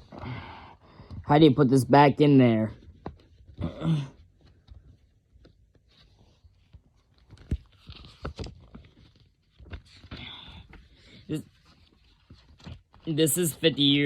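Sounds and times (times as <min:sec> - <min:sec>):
paper rustling: 0:04.3 - 0:14.0.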